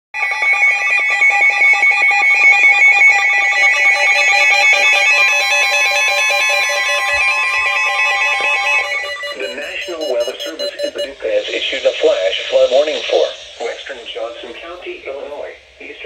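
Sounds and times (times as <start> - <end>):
electronic alert tone: 3.6 - 11.3.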